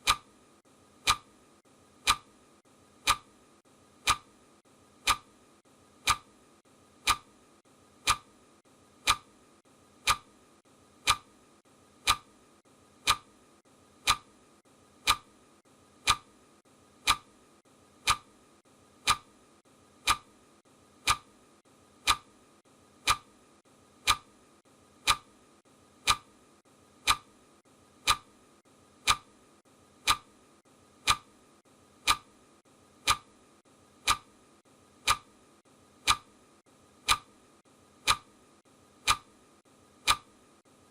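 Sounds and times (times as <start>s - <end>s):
clock ticking: 0.0s - 0.3s, 1.0s - 1.3s, 2.0s - 2.3s, 3.0s - 3.3s, 4.0s - 4.3s, 5.0s - 5.3s, 6.0s - 6.3s, 7.0s - 7.4s, 8.0s - 8.4s, 9.0s - 9.4s, 10.0s - 10.3s, 11.0s - 11.3s, 12.0s - 12.3s, 13.0s - 13.3s, 14.0s - 14.4s, 15.0s - 15.3s, 16.0s - 16.3s, 17.0s - 17.4s, 18.0s - 18.3s, 19.0s - 19.3s, 20.0s - 20.3s, 21.0s - 21.3s, 22.0s - 22.3s, 23.0s - 23.4s, 24.0s - 24.3s, 25.0s - 25.3s, 26.0s - 26.3s, 27.0s - 27.3s, 28.0s - 28.3s, 29.0s - 29.3s, 30.0s - 30.4s, 31.0s - 31.3s, 32.0s - 32.3s, 33.0s - 33.3s, 34.0s - 34.3s, 35.0s - 35.3s, 36.0s - 36.3s, 37.0s - 37.4s, 38.0s - 38.3s, 39.0s - 39.3s, 40.0s - 40.4s.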